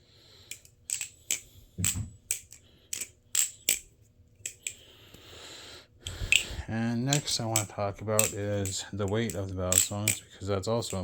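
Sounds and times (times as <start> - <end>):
butterfly knife clacking: 7.1 - 10.2.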